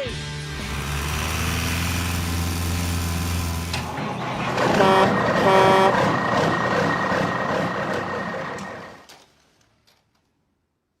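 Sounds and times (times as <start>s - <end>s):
vehicle engine running: 0.2s - 9.0s
horn honks: 4.5s - 6.6s.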